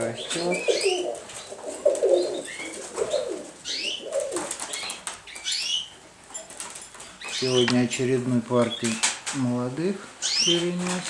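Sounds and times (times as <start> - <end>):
pigeons cooing: 0.0 - 6.1
young pigeons squeaking: 0.0 - 9.3, 10.2 - 11.0
wings flapping: 8.7 - 9.4.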